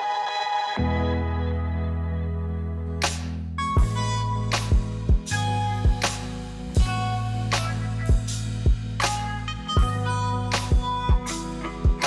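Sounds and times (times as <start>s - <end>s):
sustained bass note: 3.6s - 12.0s.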